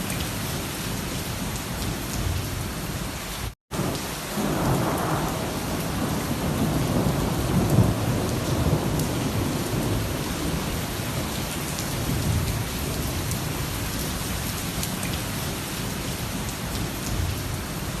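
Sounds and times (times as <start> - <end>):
heavy rain pouring: 0.0 - 18.0
thunder rumbling: 3.7 - 13.3.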